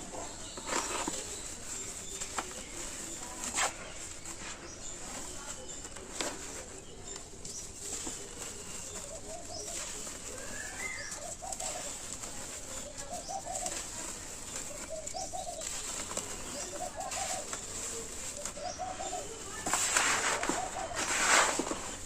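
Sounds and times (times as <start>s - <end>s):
dirt crumbling by hand: 0.0s - 22.0s
small bird chirping: 0.0s - 22.0s
dove cooing: 7.8s - 21.9s.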